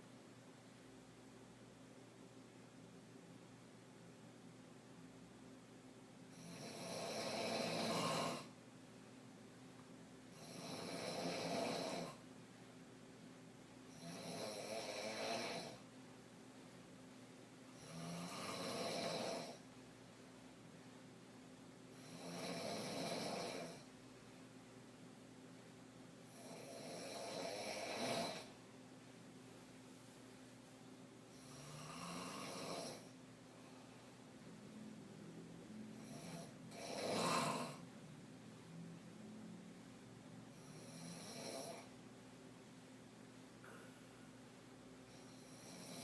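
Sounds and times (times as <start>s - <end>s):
woman snoring: 6.3s - 8.6s, 10.3s - 12.2s, 13.9s - 15.8s, 17.8s - 19.7s, 21.9s - 23.9s, 26.3s - 28.6s, 31.3s - 33.2s, 35.9s - 37.8s, 40.5s - 41.9s, 45.1s - 46.0s.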